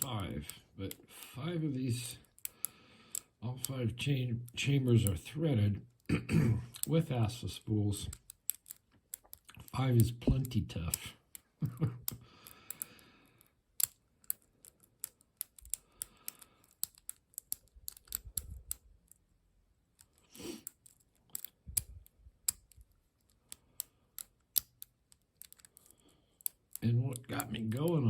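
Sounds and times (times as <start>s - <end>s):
lock pick metallic clicks: 0.0s - 0.6s, 2.1s - 3.8s, 6.7s - 7.0s, 8.0s - 19.2s, 20.0s - 28.0s.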